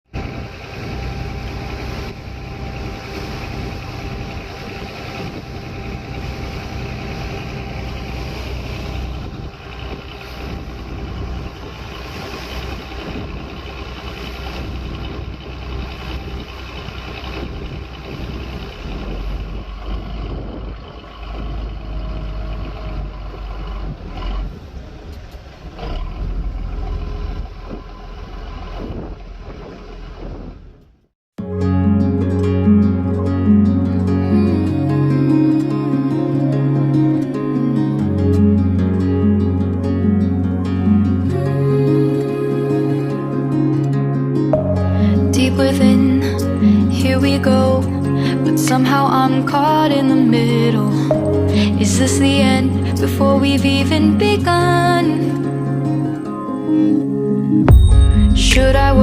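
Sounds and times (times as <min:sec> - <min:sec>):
constant rushing noise: 0:00.1 - 0:26.1
engine running with low rumble: 0:00.1 - 0:31.1, 0:31.8 - 0:59.0.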